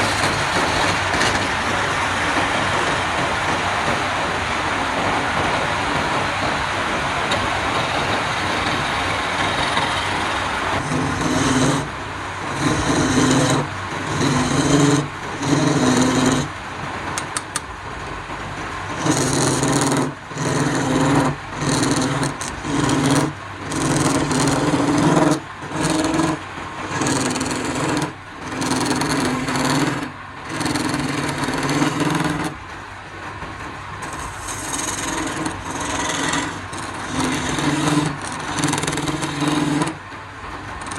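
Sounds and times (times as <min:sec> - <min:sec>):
wood lathe cutting wood: 0:00.0 - 0:02.0, 0:08.5 - 0:16.5, 0:18.9 - 0:32.6, 0:34.0 - 0:40.0.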